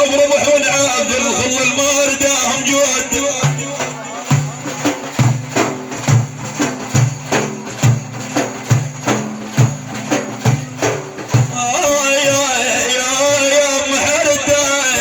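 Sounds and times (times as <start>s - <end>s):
hand percussion rhythm: 0.0s - 15.0s
man singing long note: 11.6s - 15.0s.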